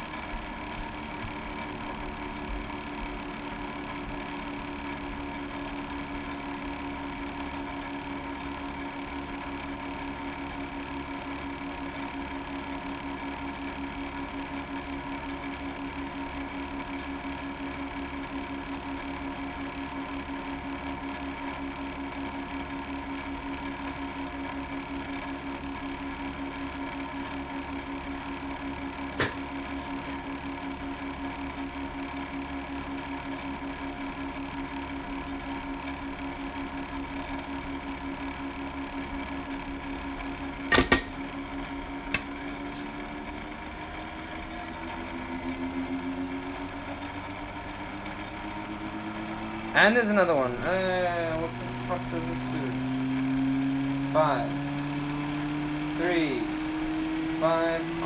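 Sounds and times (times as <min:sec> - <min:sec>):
electrical machine hum: 0:00.0 - 0:58.0
sharp click: 0:29.2 - 0:29.5, 0:40.7 - 0:41.2, 0:42.2 - 0:42.6.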